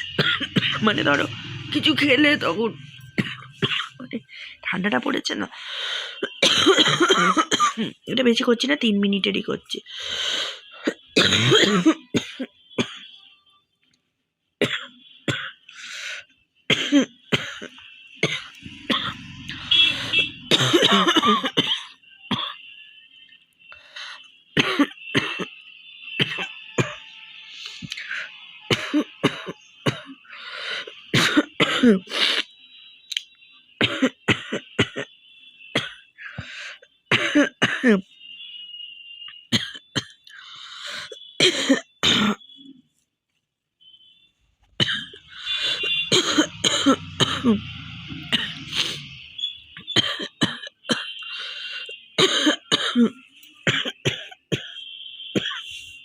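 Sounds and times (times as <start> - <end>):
woman coughing: 0.0 - 1.3, 3.2 - 4.3, 6.2 - 8.2, 10.7 - 13.1, 14.6 - 15.7, 16.7 - 22.7, 24.6 - 25.6, 26.2 - 27.0, 28.7 - 32.5, 33.8 - 36.5, 37.1 - 38.1, 39.5 - 42.5, 44.8 - 49.1, 49.9 - 54.8, 55.4 - 55.8
woman clearing throat: 0.1 - 1.0, 6.2 - 8.1, 10.8 - 13.0, 16.7 - 22.6, 24.6 - 25.5, 31.2 - 32.1, 33.8 - 35.1, 37.1 - 38.0, 44.8 - 49.1, 52.2 - 54.7.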